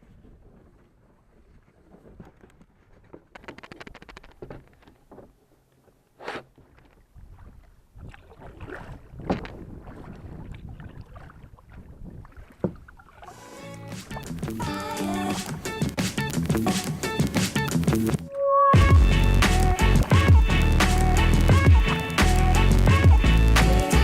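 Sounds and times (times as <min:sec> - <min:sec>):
paddle splashes and hull knocks: 0:06.6 - 0:13.4
wind on microphone: 0:07.2 - 0:13.0.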